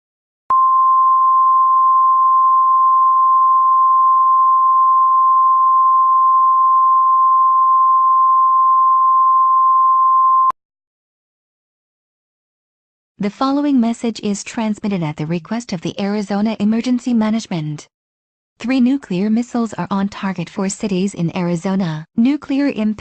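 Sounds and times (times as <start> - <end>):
steady single-pitch alert tone: 0.5 - 10.6.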